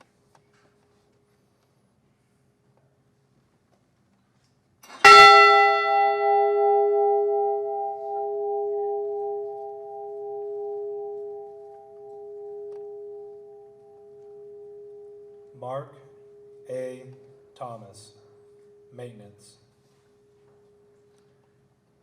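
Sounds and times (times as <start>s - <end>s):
bell ringing: 4.9s - 15.4s.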